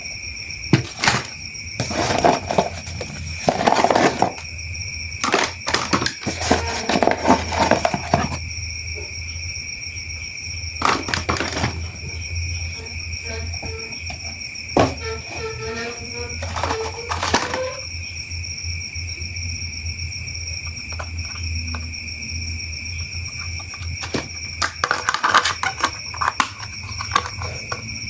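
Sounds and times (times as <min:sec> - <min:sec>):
plastic toy train parts rattling: 0:00.7 - 0:04.4, 0:05.2 - 0:08.4, 0:10.8 - 0:12.0, 0:12.8 - 0:17.9, 0:23.3 - 0:28.0.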